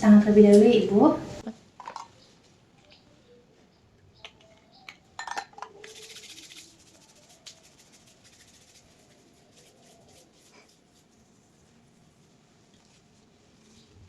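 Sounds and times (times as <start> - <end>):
faint scratching and ticking: 0.0 - 14.0
rustling: 5.6 - 14.0.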